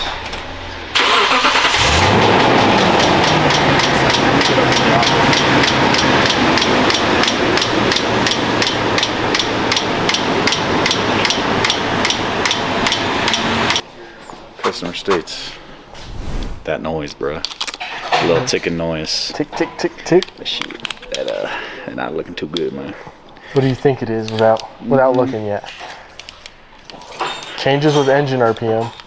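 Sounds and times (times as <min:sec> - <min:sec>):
engine starting and running: 0:00.0 - 0:13.8
rapid even ticking: 0:01.0 - 0:13.8.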